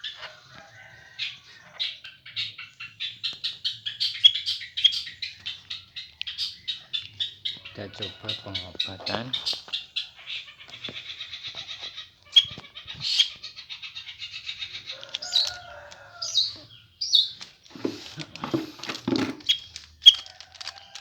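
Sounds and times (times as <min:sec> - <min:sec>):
bird chirps: 0:01.4 - 0:17.4, 0:19.4 - 0:20.3
bird ticking trill: 0:02.9 - 0:10.9
wings flapping and rustling: 0:17.3 - 0:21.0.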